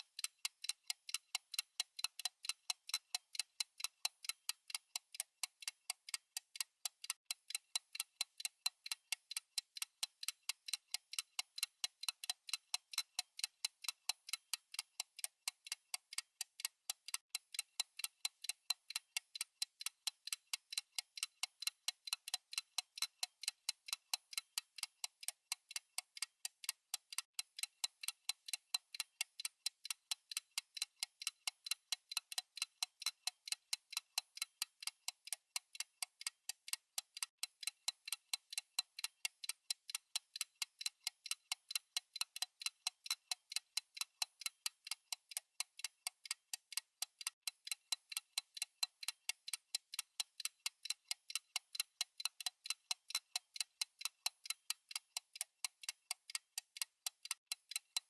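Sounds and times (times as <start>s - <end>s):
fast clock ticking: 0.0s - 58.0s.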